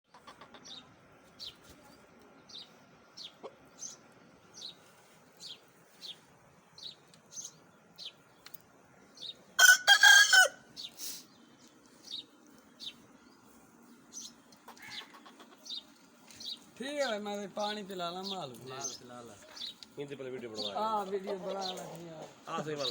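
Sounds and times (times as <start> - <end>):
small bird chirping: 0.1 - 9.4, 10.8 - 16.7, 17.6 - 20.0
rooster crowing: 9.6 - 10.7.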